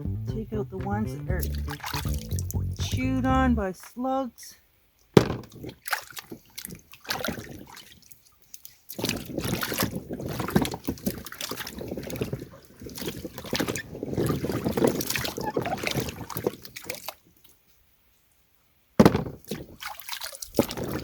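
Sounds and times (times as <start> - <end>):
water splashing in a tub: 1.4 - 2.8, 5.2 - 17.6, 19.0 - 21.0.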